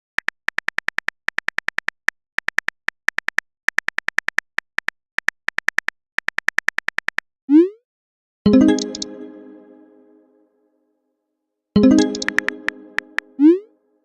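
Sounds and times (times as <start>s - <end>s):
electronic typing ticks: 0.2s - 7.2s, 8.6s - 9.3s, 11.8s - 13.3s.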